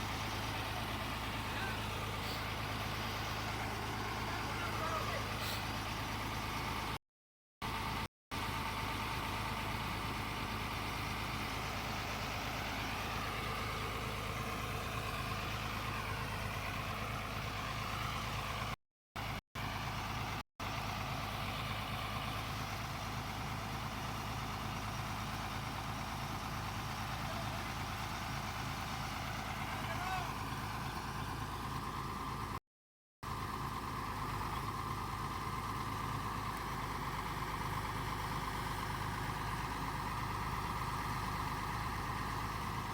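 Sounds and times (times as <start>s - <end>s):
excavator diesel engine digging: 0.0s - 6.5s.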